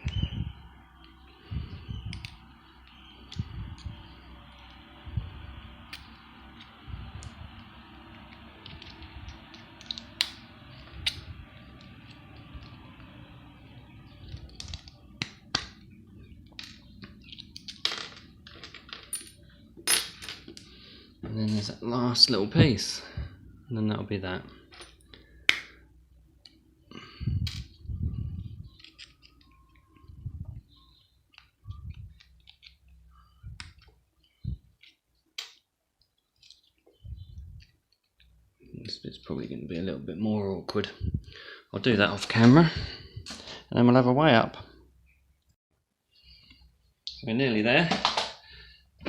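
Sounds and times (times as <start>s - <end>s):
small metal parts clattering: 16.5s - 20.7s, 28.7s - 30.0s
plastic parts clicking and knocking: 47.9s - 48.4s.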